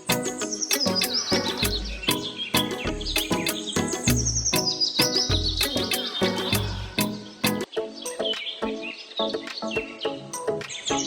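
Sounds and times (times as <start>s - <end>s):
music with percussive beat: 0.0s - 8.6s.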